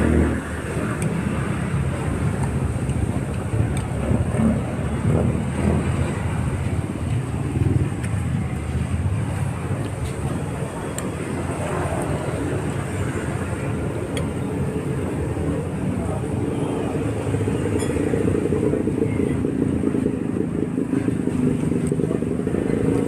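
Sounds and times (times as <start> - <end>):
vehicle engine running: 0.0 - 23.0
people talking: 7.6 - 23.0.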